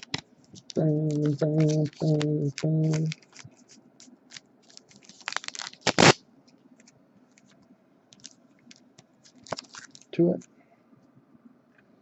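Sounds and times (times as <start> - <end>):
cards clicking against each other: 0.0 - 6.2
cards scraping rustle: 0.0 - 6.2, 8.2 - 10.2.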